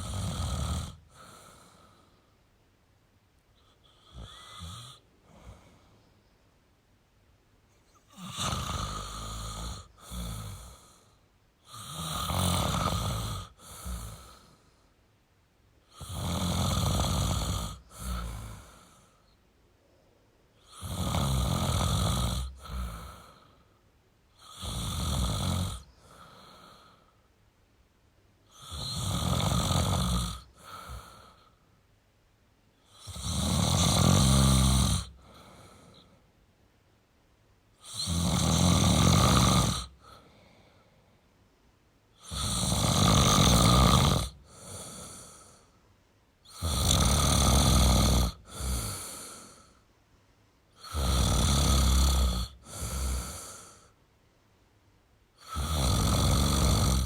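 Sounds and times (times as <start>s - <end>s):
man snoring: 0.0s - 2.0s, 3.8s - 5.7s, 8.1s - 14.6s, 15.9s - 19.1s, 20.6s - 23.6s, 24.4s - 27.0s, 28.5s - 31.5s, 32.9s - 36.1s, 37.8s - 40.3s, 42.2s - 45.7s, 46.4s - 49.8s, 50.8s - 54.0s, 55.4s - 57.0s.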